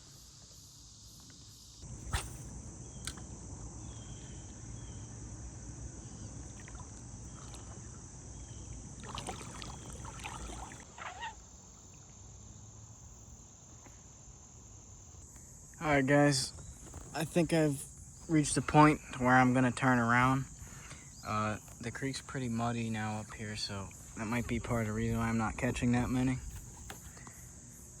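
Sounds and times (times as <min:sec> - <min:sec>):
insects droning: 0:00.0 - 0:28.0
water and kayak hull rumbling: 0:06.0 - 0:12.3.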